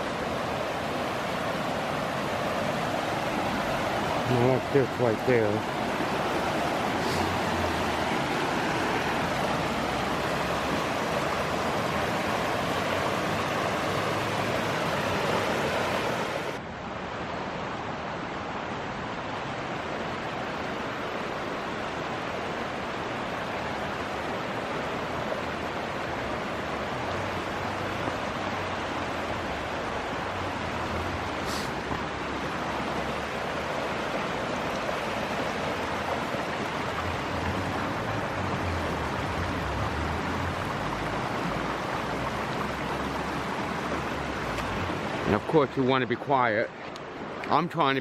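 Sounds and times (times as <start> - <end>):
creek water rushing over rocks: 0.0 - 48.0.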